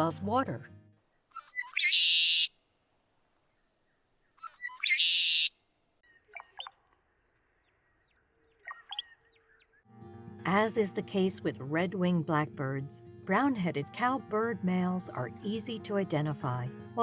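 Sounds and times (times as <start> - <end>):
bird gurgling and thin whistle: 1.4 - 2.5, 4.4 - 5.5, 6.3 - 7.2, 8.7 - 9.4
blackbird song with buzzy trill: 1.4 - 2.5, 3.5 - 9.9.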